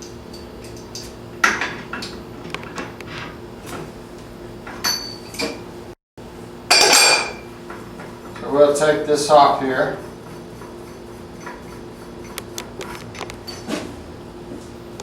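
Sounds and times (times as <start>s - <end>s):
metal tools clinking: 4.7s - 5.6s.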